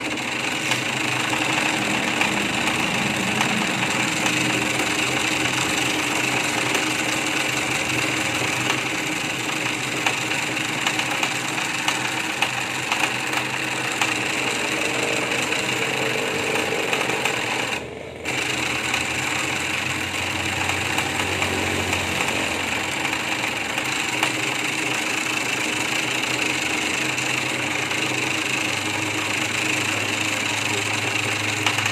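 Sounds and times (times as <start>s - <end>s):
jigsaw rattling: 0.0s - 31.9s.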